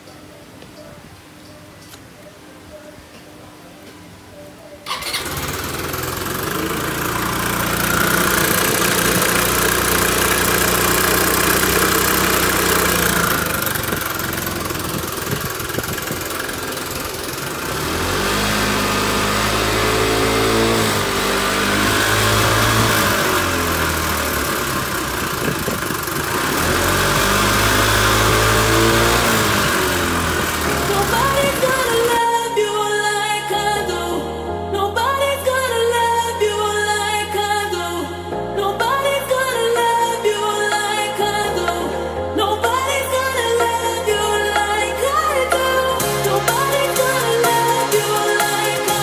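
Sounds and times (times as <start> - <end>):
abnormal engine noise: 4.9 - 32.2
scooter engine starting and revving: 4.9 - 32.3, 42.6 - 49.0.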